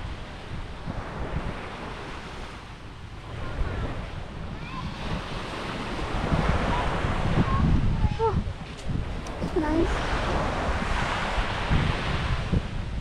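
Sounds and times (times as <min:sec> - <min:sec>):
small waves washing on beach: 0:00.0 - 0:13.0
wind buffeting microphone: 0:00.0 - 0:13.0.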